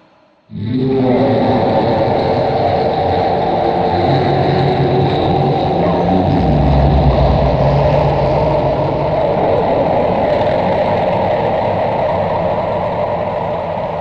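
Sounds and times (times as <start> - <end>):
low hum: 0.0 - 14.0
mechanical rumble: 4.5 - 12.6.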